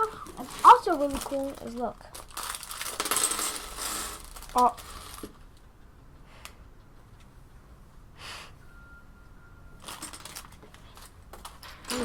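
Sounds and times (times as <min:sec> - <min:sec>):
plastic pieces clicking: 0:00.0 - 0:05.6, 0:09.8 - 0:12.0
short sharp breath: 0:08.2 - 0:08.7.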